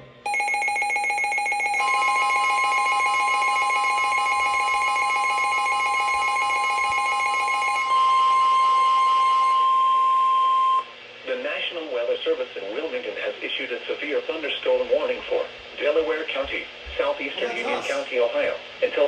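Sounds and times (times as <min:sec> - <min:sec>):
rapidly pulsing electronic alarm: 0:00.3 - 0:10.9
steady high alarm tone: 0:00.3 - 0:10.9.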